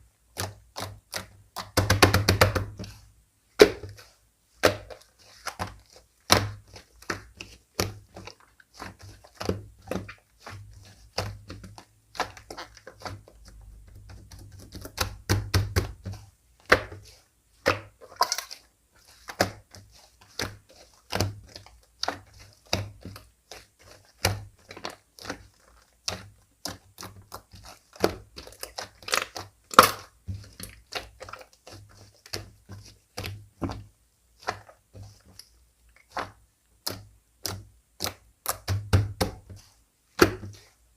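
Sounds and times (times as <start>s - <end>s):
slime clicking and popping: 26.1s - 30.2s, 36.0s - 39.4s.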